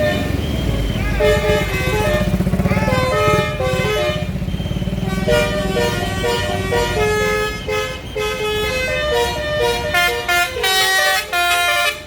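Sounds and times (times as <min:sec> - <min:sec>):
bus engine rumbling: 0:00.0 - 0:12.0
multi-tone musical air horn: 0:05.0 - 0:12.0.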